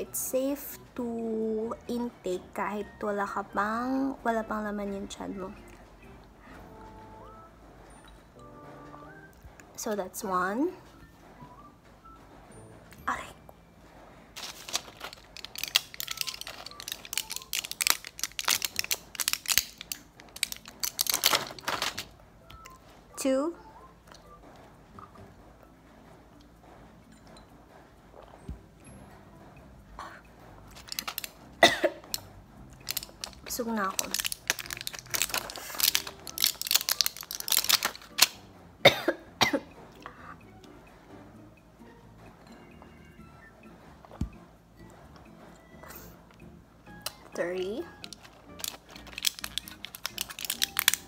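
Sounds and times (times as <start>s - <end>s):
plastic packaging crinkling: 14.4s - 22.1s, 30.8s - 31.4s, 32.8s - 38.4s, 47.9s - 51.0s
woman coughing: 31.6s - 32.1s, 38.8s - 39.8s.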